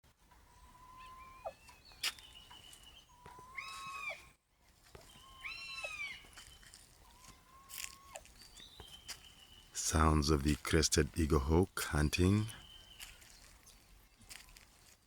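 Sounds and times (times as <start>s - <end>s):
eagle shrill whistling calls: 0.5s - 4.3s, 5.0s - 9.8s.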